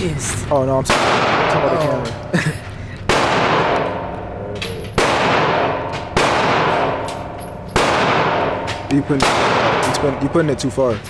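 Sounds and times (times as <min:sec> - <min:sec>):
gunshots with ringing decay: 0:00.9 - 0:01.7, 0:03.1 - 0:10.5.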